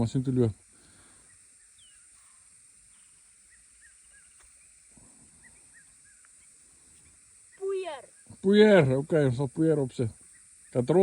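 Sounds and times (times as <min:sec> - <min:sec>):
steady high-pitched hiss: 0:00.0 - 0:11.0.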